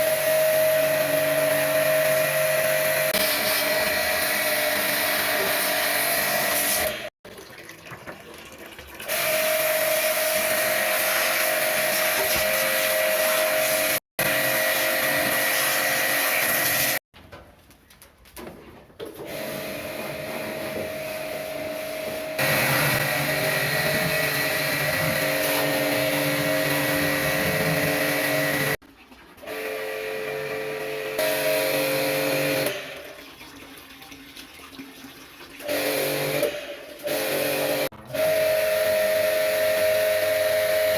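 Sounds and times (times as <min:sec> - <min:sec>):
pressure washer motor whine: 0:09.1 - 0:17.0, 0:19.3 - 0:28.8, 0:35.6 - 0:40.9.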